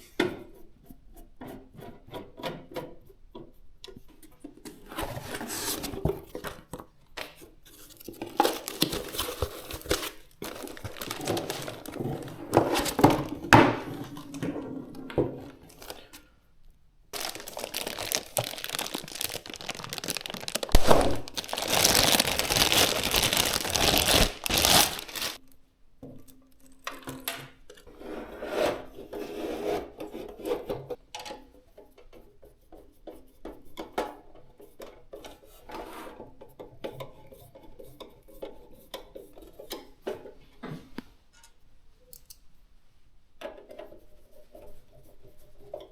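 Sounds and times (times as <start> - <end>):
packaging rustling and tearing: 8.1 - 14.3, 15.7 - 16.1, 17.2 - 25.4.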